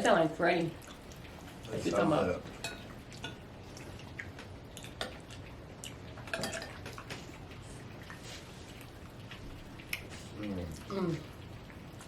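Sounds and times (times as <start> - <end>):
faint rain patter: 0.0 - 12.0
spoons clinking against bowls: 2.5 - 3.4, 6.3 - 6.8.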